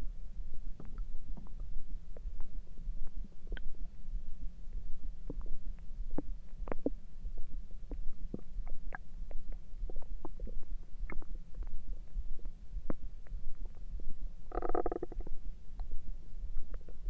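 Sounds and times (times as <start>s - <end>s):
stomach gurgling: 5.2s - 13.8s, 14.5s - 15.9s.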